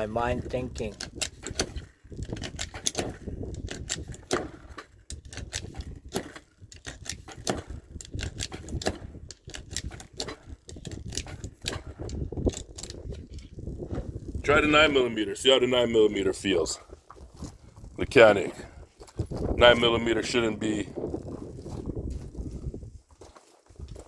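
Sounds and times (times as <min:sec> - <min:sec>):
metallic clicks and rattles: 0:00.0 - 0:15.6.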